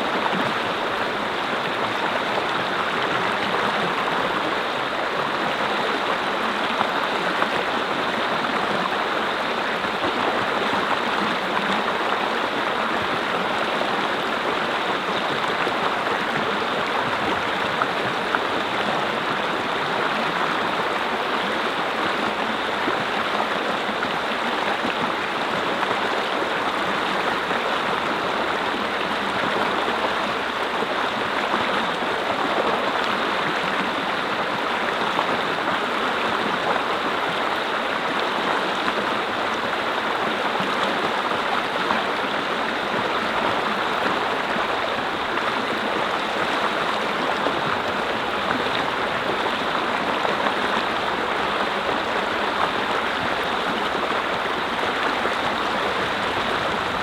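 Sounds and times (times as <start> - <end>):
stream flowing over rocks: 0.0 - 57.0.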